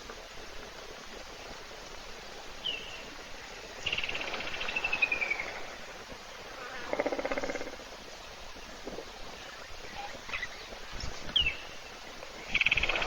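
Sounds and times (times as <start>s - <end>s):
insects hissing: 2.6s - 8.0s.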